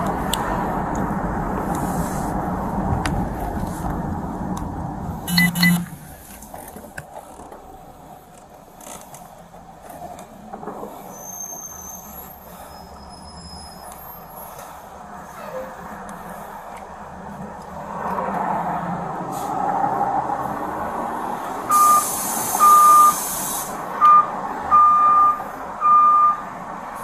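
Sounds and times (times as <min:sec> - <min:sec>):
vehicle running: 0:00.0 - 0:11.2
quick electronic beeps: 0:05.3 - 0:06.0.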